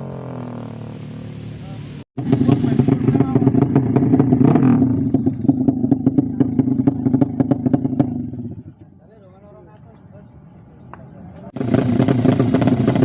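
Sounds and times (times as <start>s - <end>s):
exhaust crackles: 0.0s - 8.9s, 11.6s - 13.0s
motorcycle engine running hard: 2.2s - 8.8s, 11.6s - 13.0s.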